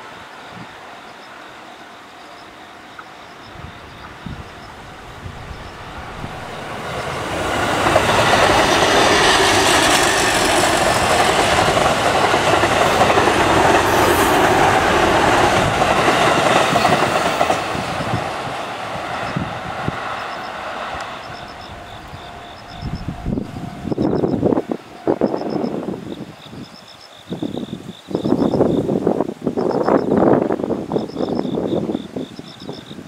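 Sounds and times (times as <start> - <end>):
electric train passing: 0.0 - 32.9
tone-like ringing: 21.3 - 25.7.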